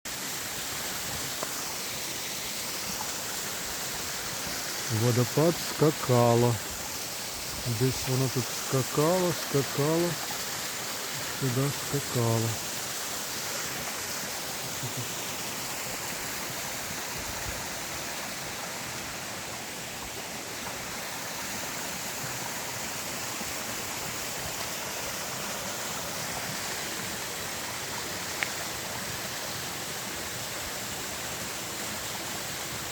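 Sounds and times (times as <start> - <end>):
small waterfall splashing: 0.1 - 32.9.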